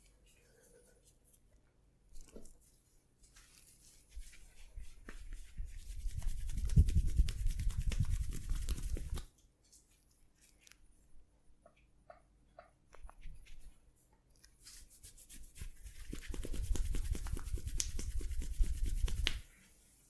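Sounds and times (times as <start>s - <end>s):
hands rubbing in massage: 2.5s - 9.3s, 14.6s - 20.0s.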